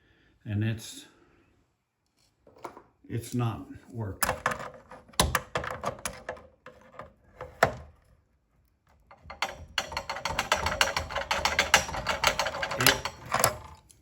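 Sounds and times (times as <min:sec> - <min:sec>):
gears clicking and ratcheting: 0:09.3 - 0:13.9.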